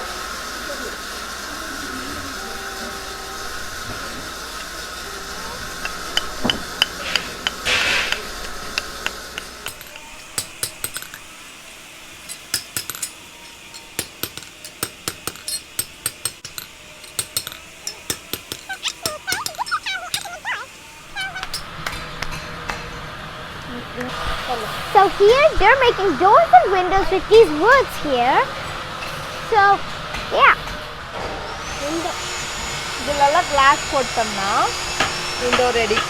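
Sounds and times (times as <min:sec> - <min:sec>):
steady hum: 0:00.0 - 0:30.6
scattered knocks: 0:03.8 - 0:11.3, 0:13.8 - 0:20.6
hammer tapping: 0:03.9 - 0:11.2, 0:13.8 - 0:20.4.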